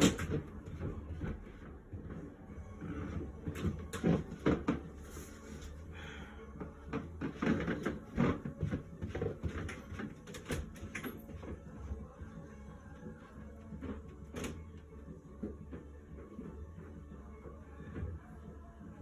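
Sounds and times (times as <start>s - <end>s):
objects knocking and clattering: 0.0s - 12.2s.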